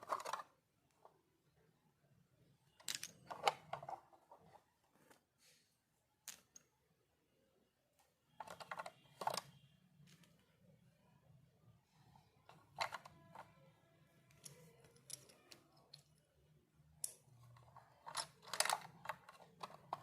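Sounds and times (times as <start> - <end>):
toy pieces clicking and clattering: 2.8 - 3.9, 14.3 - 16.2, 17.0 - 20.0.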